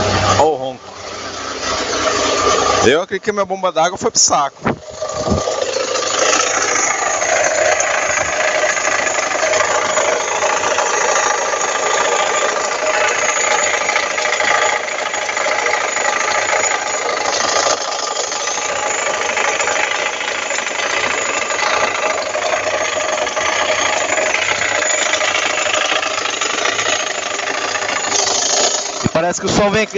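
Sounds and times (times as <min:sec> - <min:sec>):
car engine idling with growl: 0:00.0 - 0:29.9.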